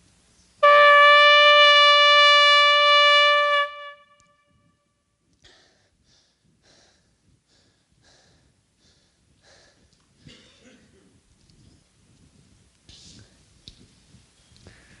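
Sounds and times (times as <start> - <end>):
loud horn blast: 0.6 - 4.6.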